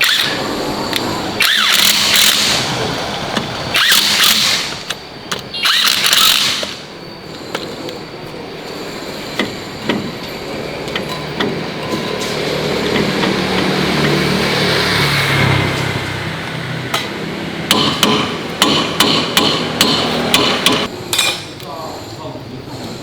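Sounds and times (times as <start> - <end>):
engine running: 0.0 - 20.9
sharp metallic knocks: 16.9 - 21.5
hammer-like metal strikes: 17.7 - 21.5.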